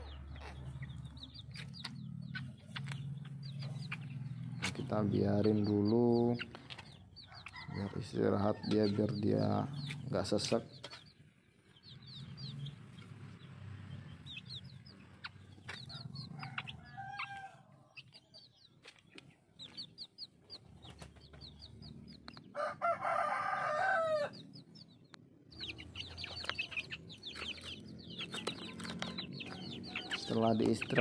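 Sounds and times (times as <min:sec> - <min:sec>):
chickens clucking: 0:00.0 - 0:31.0
chicks chirping: 0:00.0 - 0:31.0
rooster crowing: 0:07.3 - 0:08.9, 0:15.9 - 0:17.8, 0:22.5 - 0:24.4.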